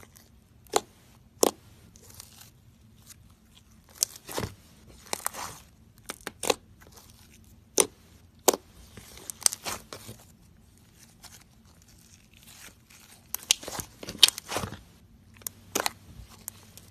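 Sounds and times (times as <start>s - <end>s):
slime crackling and popping: 3.8s - 10.1s, 11.7s - 16.9s.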